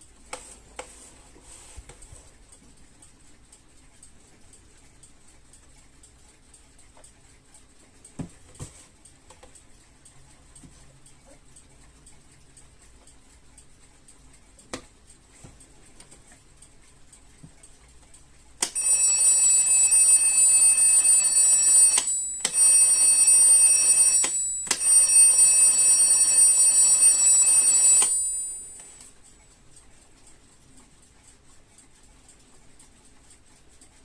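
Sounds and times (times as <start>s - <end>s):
alarm clock ringing: 18.6s - 29.0s.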